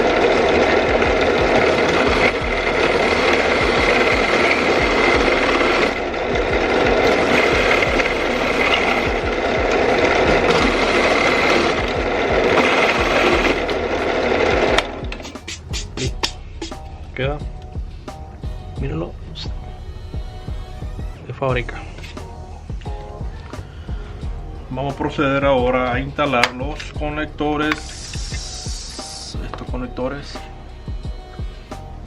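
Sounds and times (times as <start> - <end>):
power tool cutting plastic: 0.0 - 16.9, 27.6 - 29.7.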